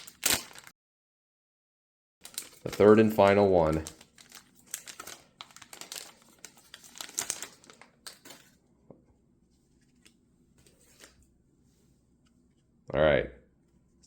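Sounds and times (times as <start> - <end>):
plastic wrapper crinkling and tearing: 0.0 - 0.7, 2.2 - 8.6.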